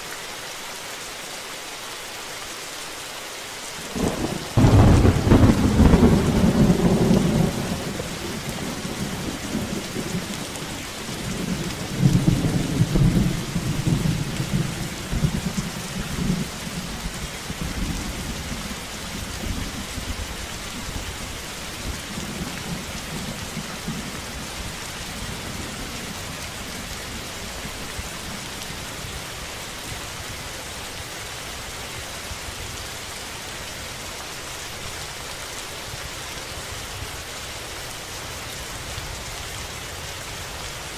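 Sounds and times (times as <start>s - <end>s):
steady rain falling: 0.0s - 40.9s
thunder rumbling: 3.9s - 21.2s.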